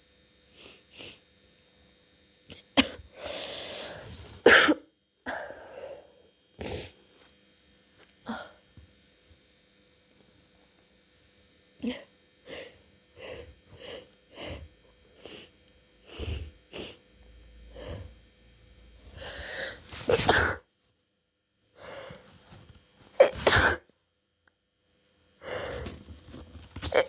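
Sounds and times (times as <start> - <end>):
person sneezing: 2.5 - 5.6, 6.6 - 7.0, 19.2 - 20.6, 23.2 - 23.9
sniffing breaths: 12.5 - 17.0, 19.0 - 20.5.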